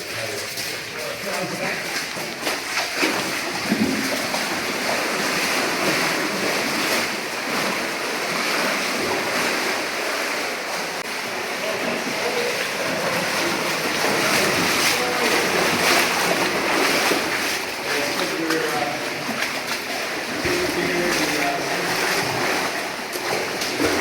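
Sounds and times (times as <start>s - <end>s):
waterfall rushing: 3.1s - 19.3s.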